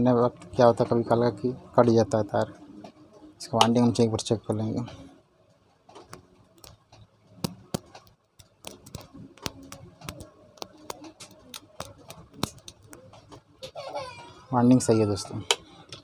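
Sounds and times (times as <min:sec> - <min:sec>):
small clicks and taps on wires: 0:05.7 - 0:13.8.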